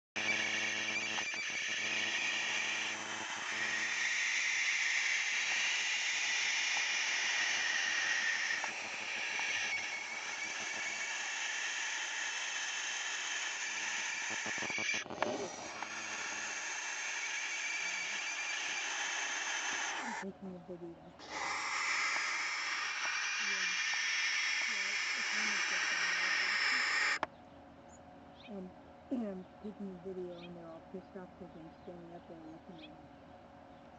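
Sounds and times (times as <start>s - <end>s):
owls hissing: 0.2s - 20.3s, 21.1s - 27.2s.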